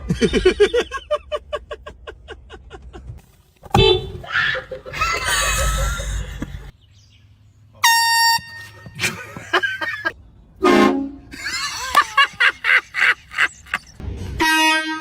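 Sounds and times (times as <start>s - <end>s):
air horn blast: 7.8s - 8.9s, 10.6s - 11.3s, 14.4s - 15.0s.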